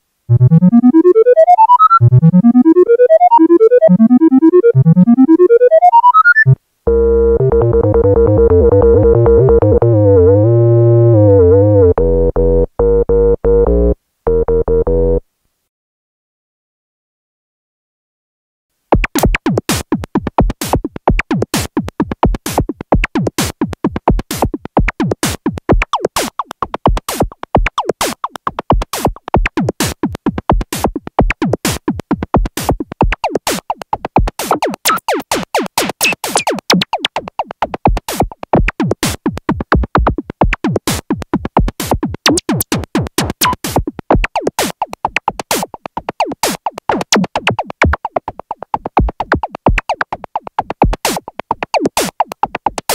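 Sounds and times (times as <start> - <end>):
synthesizer plucky sequenced notes: 0.3 - 15.2, 42.3 - 52.9.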